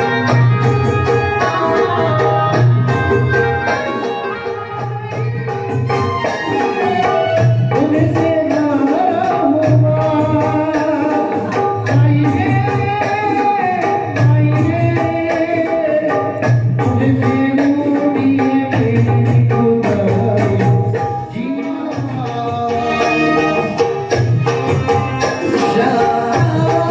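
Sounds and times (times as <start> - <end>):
percussion strokes: 0.0 - 26.9
person singing with gliding pitch: 25.4 - 26.9.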